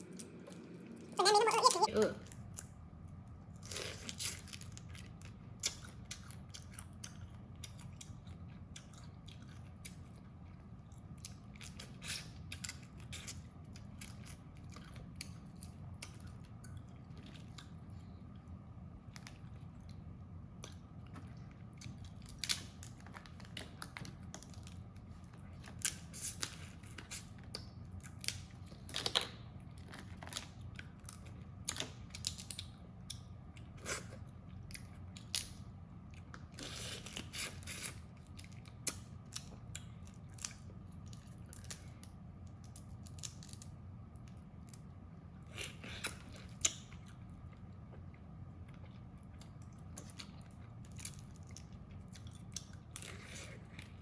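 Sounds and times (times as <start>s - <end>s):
low steady hum: 0.0s - 54.0s
chewing: 3.6s - 18.2s, 45.4s - 54.0s.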